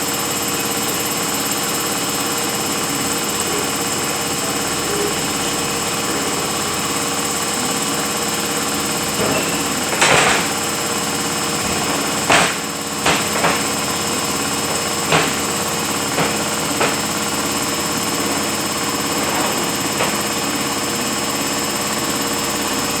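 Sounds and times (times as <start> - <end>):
transmission machine hum: 0.0 - 23.0
sharp mechanical clunks: 3.4 - 21.5.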